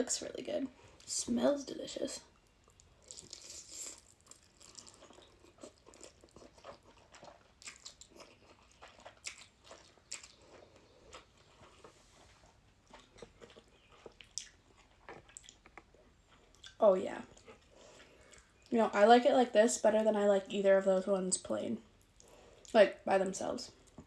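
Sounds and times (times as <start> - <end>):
person chewing noodles: 2.4 - 18.7, 22.0 - 22.7.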